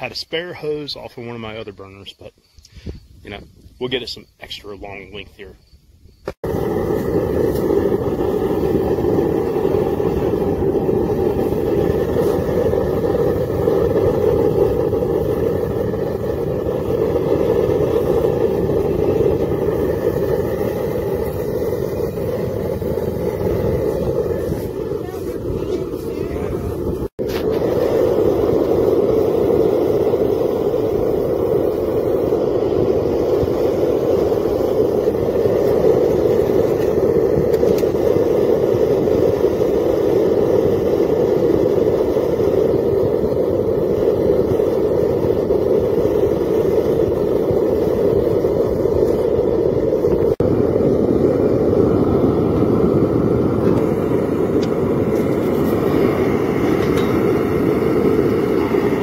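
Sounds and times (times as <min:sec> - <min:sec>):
propane burner rushing: 0:00.0 - 0:59.0.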